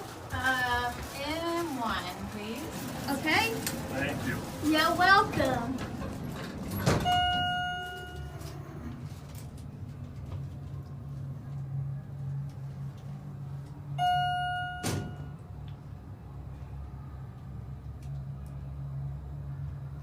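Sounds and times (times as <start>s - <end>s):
elevator cab humming: 0.0s - 20.0s
elevator thud: 5.2s - 8.0s, 14.0s - 15.4s
elevator electronic chime: 7.0s - 8.4s, 14.0s - 15.5s.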